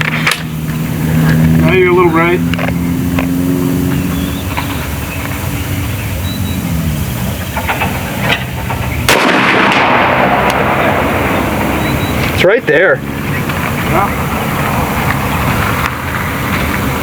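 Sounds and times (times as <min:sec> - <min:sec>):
air rifle shot: 0:09.1 - 0:11.7.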